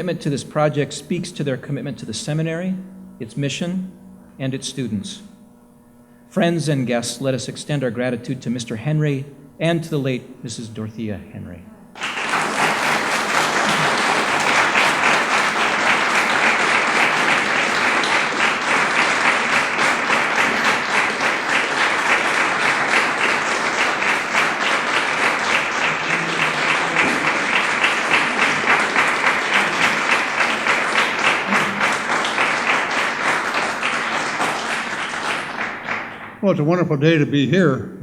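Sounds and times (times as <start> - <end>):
audience applauding: 12.0 - 36.4.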